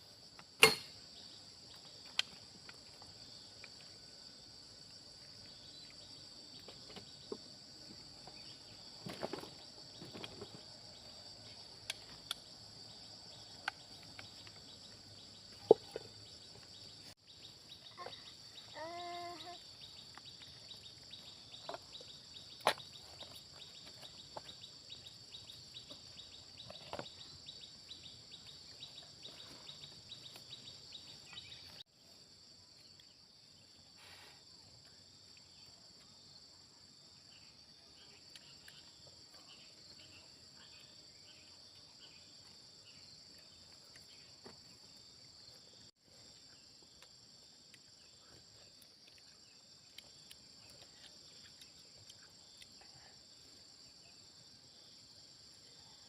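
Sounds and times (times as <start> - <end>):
high-pitched insect chorus: 0.0 - 56.0
small ticks: 48.6 - 53.0.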